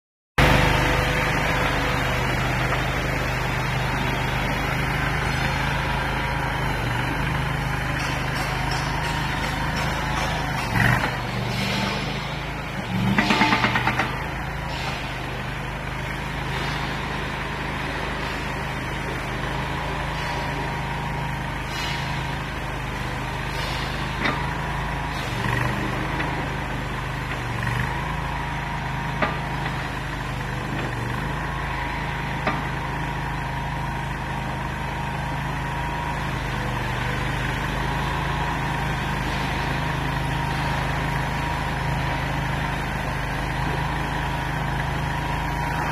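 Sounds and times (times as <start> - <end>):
loader engine running: 0.4 - 45.9.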